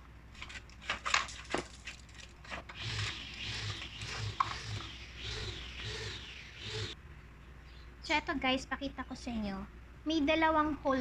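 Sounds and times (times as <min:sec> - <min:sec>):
grill parts clicking and knocking: 0:00.4 - 0:07.0.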